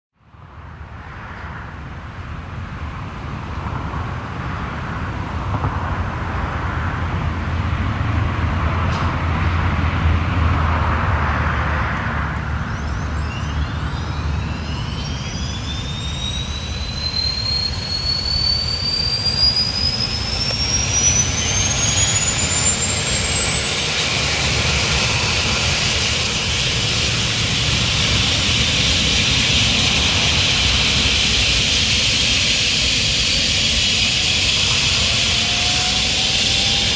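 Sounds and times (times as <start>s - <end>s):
helicopter engine starting up: 11.2s - 36.9s.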